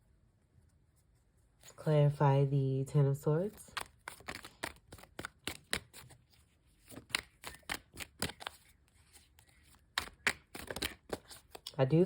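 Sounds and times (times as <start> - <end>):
cards being shuffled: 3.5 - 12.0.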